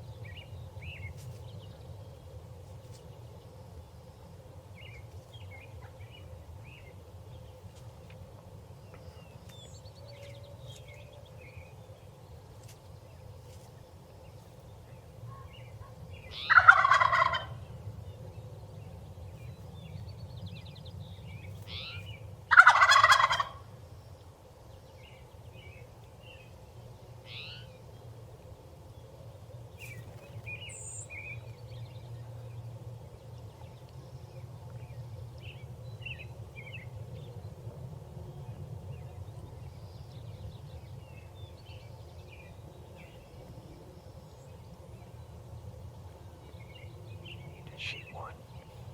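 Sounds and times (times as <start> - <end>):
turkey gobbling: 16.5 - 17.6, 22.5 - 23.6
small birds chirping: 28.8 - 37.5, 38.4 - 48.9.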